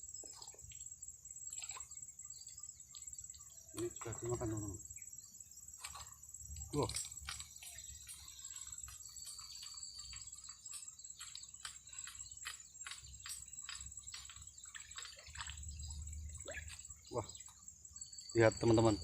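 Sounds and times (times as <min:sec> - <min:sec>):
high-pitched insect drone: 0:00.0 - 0:19.0
light clicks and ticks: 0:05.8 - 0:15.5.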